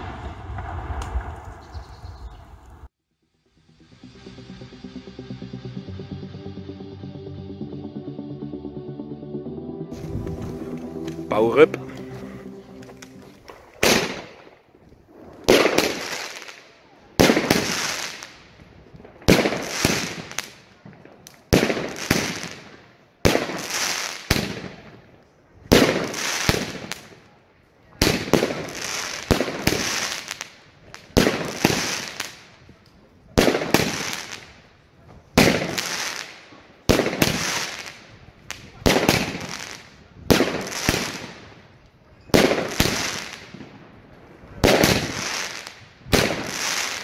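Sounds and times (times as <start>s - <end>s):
fireworks shots firing: 0.0s - 1.9s, 13.4s - 25.0s, 25.7s - 27.2s, 28.0s - 32.5s, 33.4s - 34.6s, 35.4s - 41.7s, 42.3s - 43.8s, 44.5s - 47.0s.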